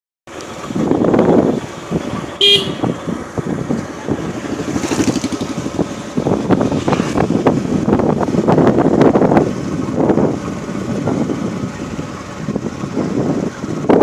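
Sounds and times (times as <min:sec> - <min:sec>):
steady rushing noise: 0:00.6 - 0:14.0
vehicle horn toot: 0:02.4 - 0:03.0.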